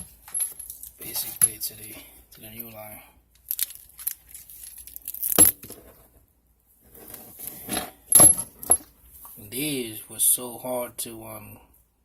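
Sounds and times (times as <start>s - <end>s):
metal fittings clinking and knocking: 8.1s - 8.9s.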